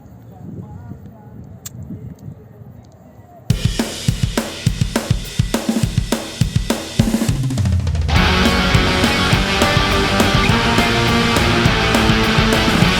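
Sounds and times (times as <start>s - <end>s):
drum kit beat: 3.5s - 12.9s
distorted guitars and bass: 8.1s - 12.9s.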